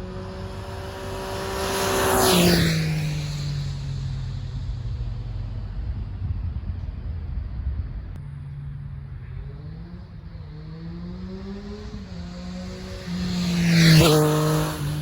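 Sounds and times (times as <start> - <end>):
motorcycle engine pulling away: 0.0 - 5.9, 9.3 - 15.0
low wind rumble: 0.0 - 15.0.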